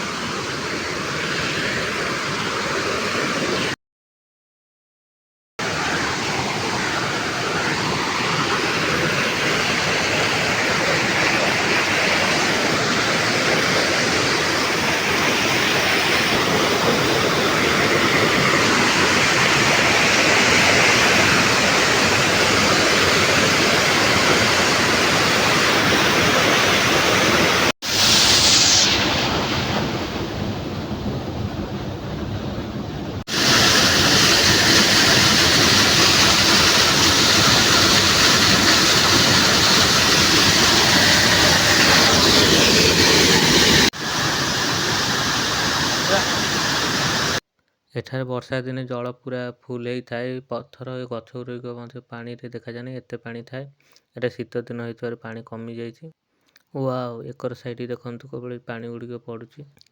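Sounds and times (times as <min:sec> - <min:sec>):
waterfall rushing: 0:05.6 - 0:30.8, 0:33.3 - 0:47.4.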